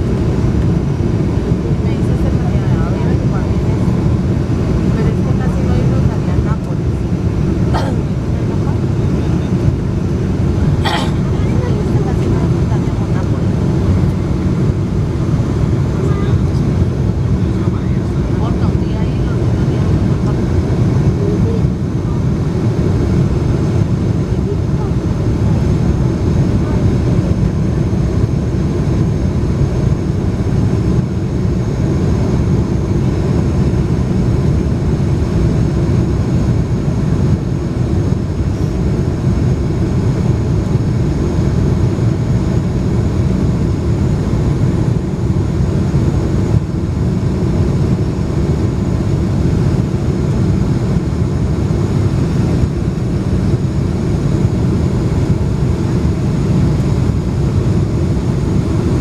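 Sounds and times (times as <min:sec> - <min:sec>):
airplane cabin engine rumble: 0:00.0 - 0:59.0.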